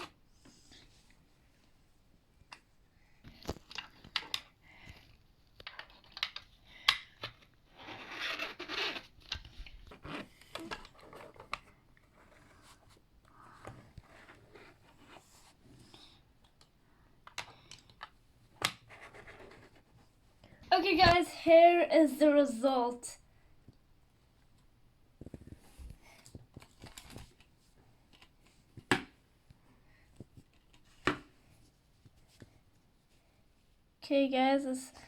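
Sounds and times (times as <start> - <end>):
plastic toy clicks and taps: 5.6 - 7.4.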